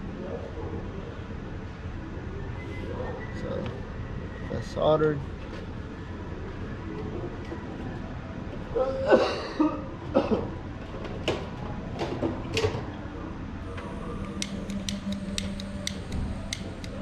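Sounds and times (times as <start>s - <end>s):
heat gun humming and hissing: 13.6s - 17.0s
light rapid clicks: 13.7s - 17.0s.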